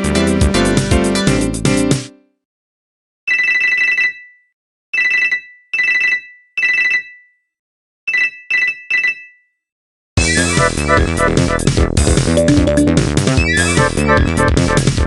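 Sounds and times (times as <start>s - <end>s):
phone ringtone electronic trill: 12.3s - 14.2s.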